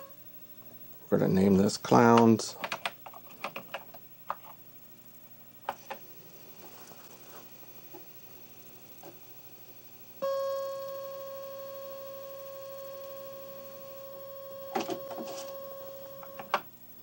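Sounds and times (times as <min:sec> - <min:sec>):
steady electronic tone: 0:09.4 - 0:16.5.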